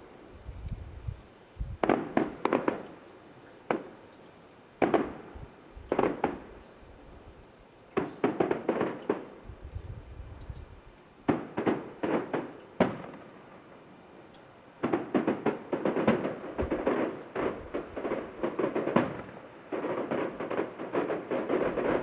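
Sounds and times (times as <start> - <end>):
fireworks crackling and popping: 1.6 - 3.0, 3.7 - 4.0, 4.8 - 6.8, 8.0 - 10.1, 11.2 - 13.7, 14.8 - 22.0
distant fireworks bangs: 1.8 - 3.0, 3.7 - 4.0, 4.8 - 6.8, 8.0 - 9.4, 11.2 - 13.6, 14.8 - 22.0.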